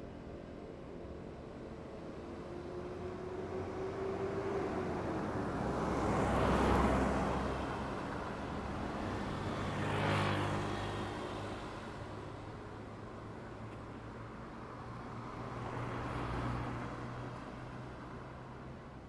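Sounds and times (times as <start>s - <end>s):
road vehicles passing: 14.3s - 19.0s.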